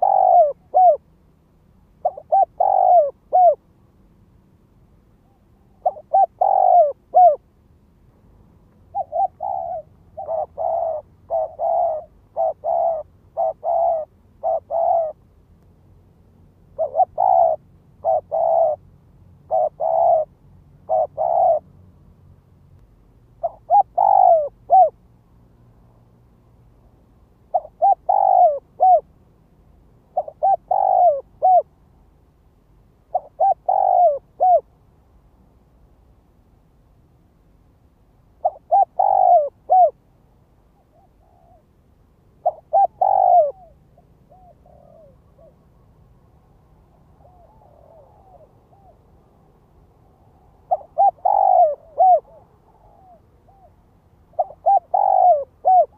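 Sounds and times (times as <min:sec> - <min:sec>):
dove cooing: 0:00.0 - 0:01.1, 0:02.0 - 0:03.7, 0:05.2 - 0:07.5, 0:08.9 - 0:15.3, 0:16.7 - 0:21.7, 0:23.4 - 0:25.0, 0:27.5 - 0:29.1, 0:30.1 - 0:31.8, 0:33.1 - 0:34.7, 0:38.4 - 0:40.0, 0:40.8 - 0:41.7, 0:42.4 - 0:45.8, 0:46.9 - 0:49.1, 0:50.5 - 0:55.9.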